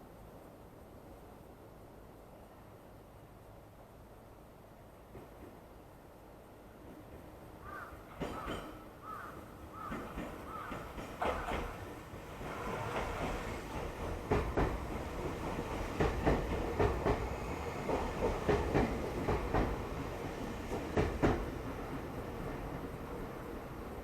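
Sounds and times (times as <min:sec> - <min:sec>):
train rumble: 0:00.0 - 0:24.0
train wheels clacking over rail joints: 0:07.7 - 0:20.0, 0:20.6 - 0:21.6.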